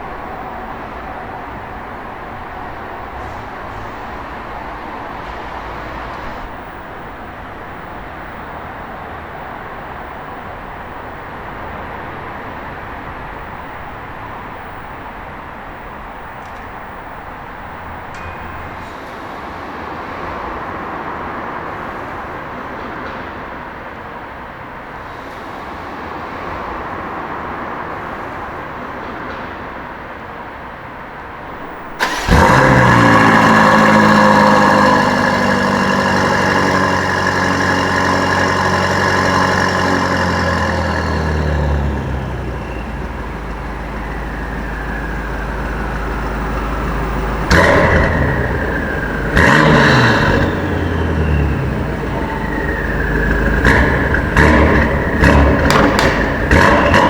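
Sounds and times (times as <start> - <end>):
engine revving: 0.0 - 19.3, 31.5 - 57.0
car engine starting and idling: 0.0 - 23.5, 31.2 - 57.0.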